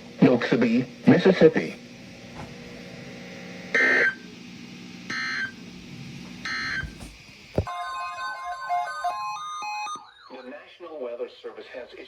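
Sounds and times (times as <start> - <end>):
steady low hum: 0.0 - 7.7.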